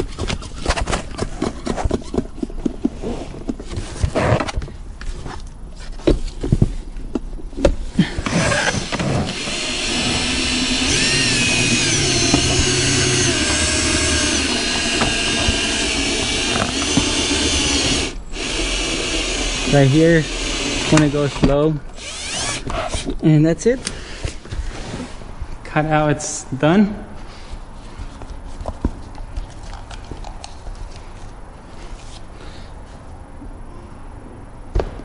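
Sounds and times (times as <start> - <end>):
power tool cutting: 8.2 - 21.4, 22.0 - 23.0.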